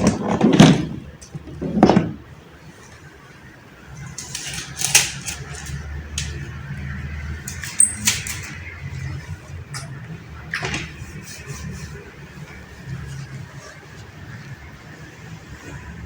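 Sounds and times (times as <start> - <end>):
clicks and rustles of handling: 4.1 - 6.6.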